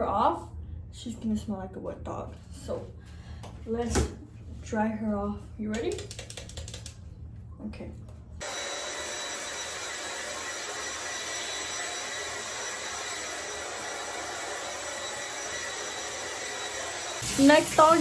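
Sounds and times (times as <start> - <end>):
blow dryer running: 8.4 - 18.0.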